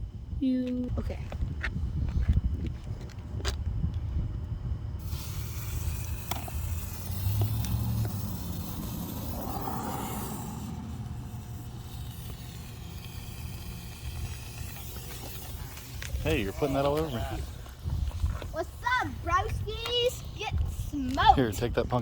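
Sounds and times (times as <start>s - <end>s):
low rumble of wind on microphone: 0.0s - 22.0s
smoke bomb hissing: 5.0s - 21.0s.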